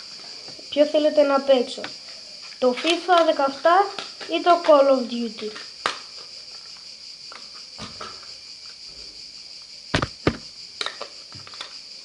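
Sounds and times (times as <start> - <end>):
high-pitched hiss: 0.0 - 12.0
objects clicking and knocking: 2.6 - 6.3, 10.0 - 11.8.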